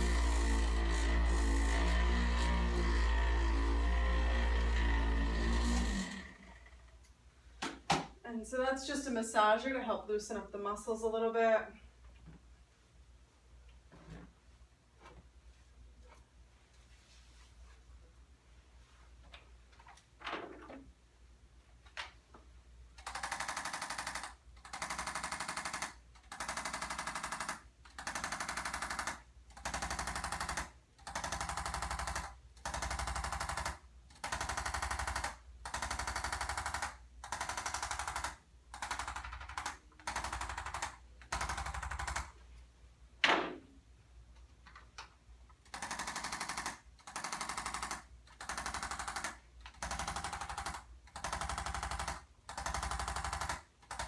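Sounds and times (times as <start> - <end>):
electric massager pulsing: 0.0 - 6.9.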